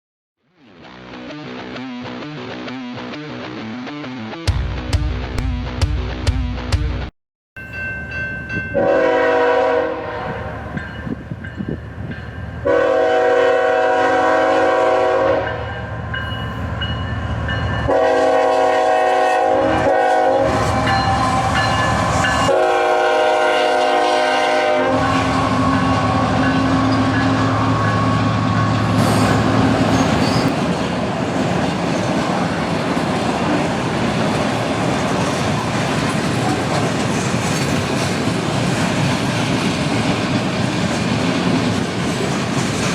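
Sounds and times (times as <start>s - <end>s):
locomotive air horn blasts: 8.8s - 10.8s, 12.6s - 15.8s, 17.8s - 30.2s
train cars clacking over rails: 25.4s - 42.9s.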